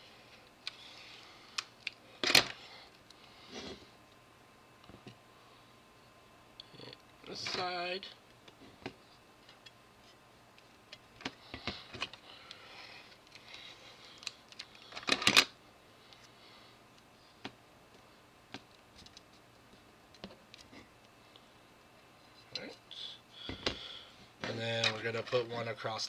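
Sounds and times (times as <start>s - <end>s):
masking tape clicks and rustles: 0.3s - 3.2s, 6.6s - 22.7s, 24.4s - 25.9s.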